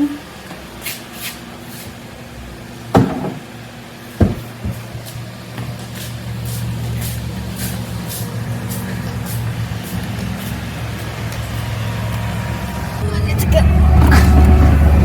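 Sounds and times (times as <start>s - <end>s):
car engine idling: 2.6s - 15.0s
heavy door thumps: 3.0s - 3.5s.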